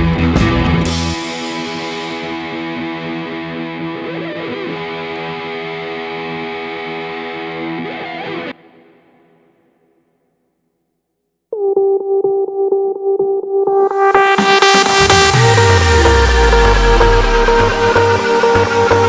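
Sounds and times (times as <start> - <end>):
distorted guitar chord: 0.0 - 8.3, 13.9 - 19.0.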